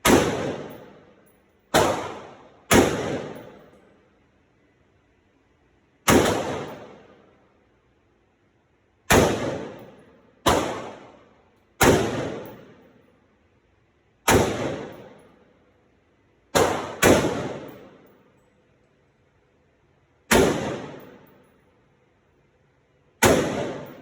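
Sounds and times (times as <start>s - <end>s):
rifle shots with echo: 0.0s - 3.8s, 6.0s - 7.3s, 9.1s - 12.9s, 14.3s - 15.4s, 16.5s - 18.2s, 20.3s - 21.6s, 23.2s - 24.0s.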